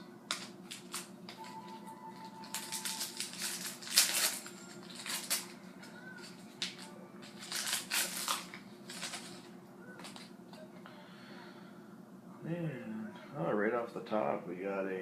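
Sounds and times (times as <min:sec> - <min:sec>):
wrapper crinkling and rustling: 0:00.3 - 0:10.3.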